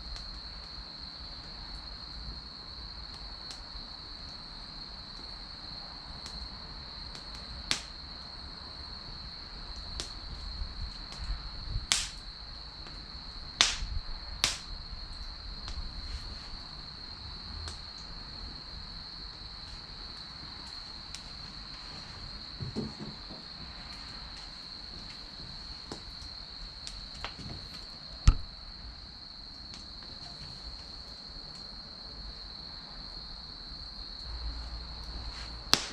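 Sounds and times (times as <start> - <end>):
wood fire crackling: 0.0 - 32.4, 33.0 - 35.9
firewood popping: 9.8 - 12.3, 13.6 - 14.8, 25.9 - 28.6, 35.7 - 35.9.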